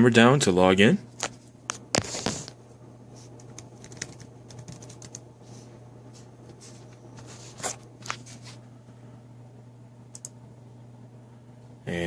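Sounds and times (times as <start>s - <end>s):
low steady hum: 0.0s - 12.0s
laptop keyboard typing: 3.4s - 5.2s.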